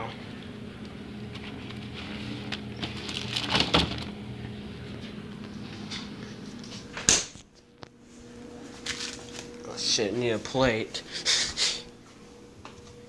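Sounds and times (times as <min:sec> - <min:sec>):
steady low hum: 0:00.0 - 0:13.0
kitchen items rummaged: 0:01.3 - 0:04.1
door shutting: 0:02.6 - 0:04.1.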